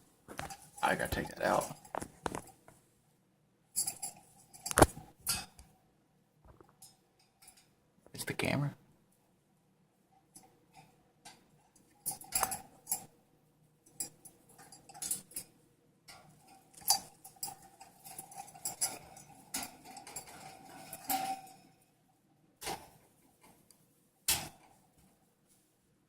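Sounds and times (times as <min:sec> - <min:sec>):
hard objects clicking and rattling: 0:00.3 - 0:02.6, 0:03.8 - 0:05.6, 0:11.3 - 0:13.1, 0:16.1 - 0:21.7.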